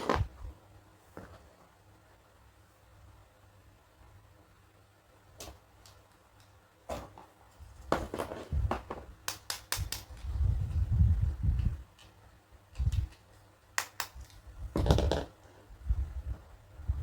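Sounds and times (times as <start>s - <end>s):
plastic toy pieces clicking: 9.2s - 10.3s, 12.7s - 14.4s.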